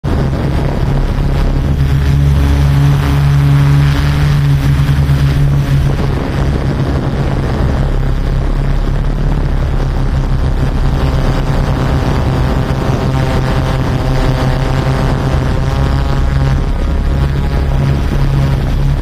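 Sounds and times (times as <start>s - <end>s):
drone propellers droning: 0.0s - 19.0s
wind on microphone: 0.0s - 19.0s.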